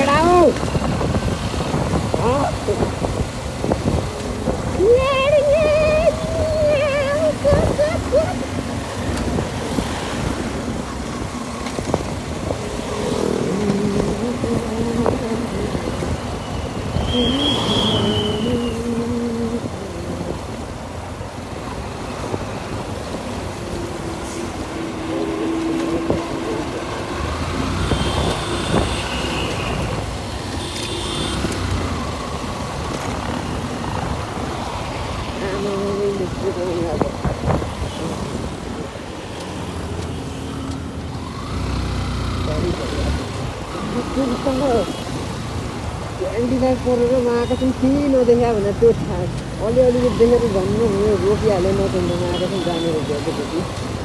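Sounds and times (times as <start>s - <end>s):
wind rumble on microphone: 0.0s - 30.6s, 31.6s - 39.3s
motorcycle road noise: 0.0s - 54.0s
vehicle horn tones: 16.5s - 18.8s, 27.7s - 31.8s.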